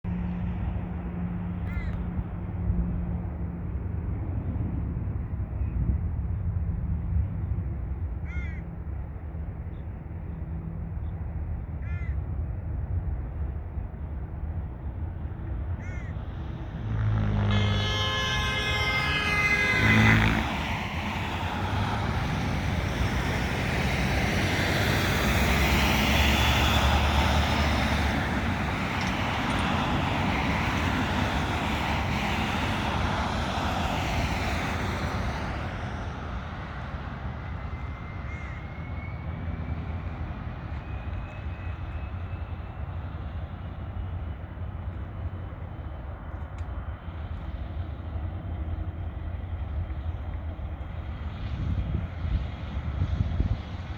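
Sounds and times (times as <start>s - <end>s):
jet taking off: 15.2s - 42.4s.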